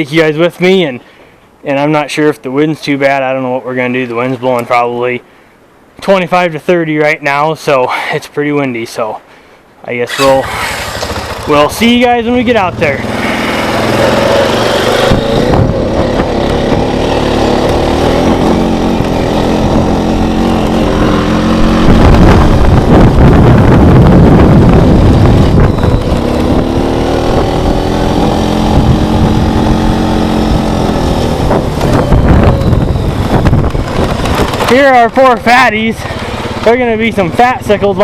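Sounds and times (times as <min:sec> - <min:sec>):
atv engine running: 0:10.1 - 0:38.0
wind buffeting microphone: 0:10.2 - 0:38.0.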